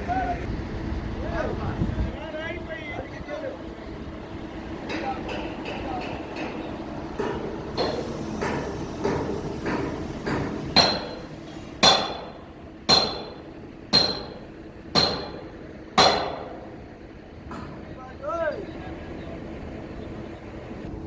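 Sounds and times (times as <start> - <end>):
hammer striking metal: 4.9 - 16.7.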